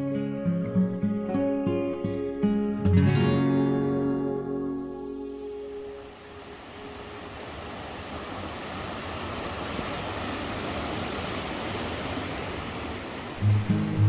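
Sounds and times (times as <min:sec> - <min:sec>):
stream water flowing: 0:05.4 - 0:14.0.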